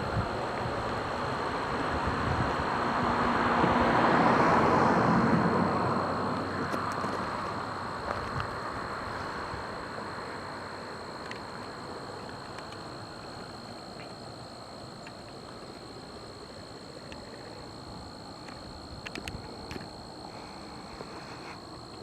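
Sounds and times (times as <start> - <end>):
insects droning: 0.0 - 22.0
faint clicks: 18.4 - 19.9.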